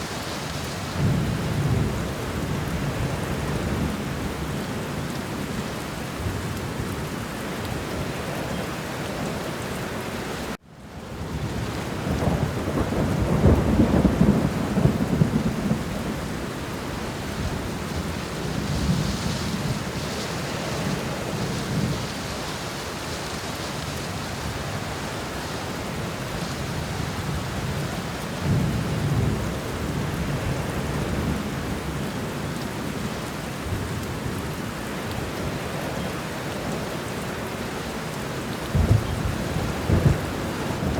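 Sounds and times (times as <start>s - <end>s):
steady rain: 0.0s - 40.9s
thunder rumbling: 0.1s - 7.2s, 11.2s - 37.4s, 38.5s - 40.9s.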